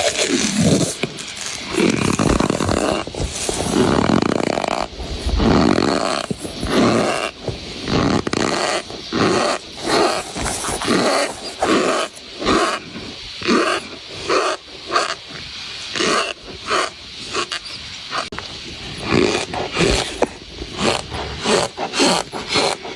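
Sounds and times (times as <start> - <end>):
cornstarch squeaky crunches: 0.0 - 7.4, 8.0 - 12.8.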